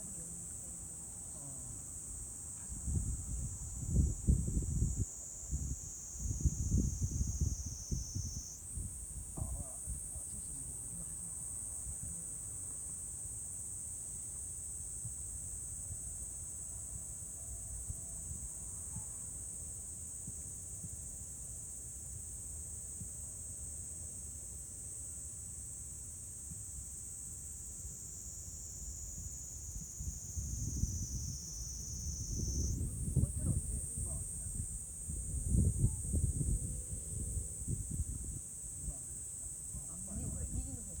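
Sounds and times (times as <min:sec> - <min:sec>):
crickets chirping: 0:00.0 - 0:41.0.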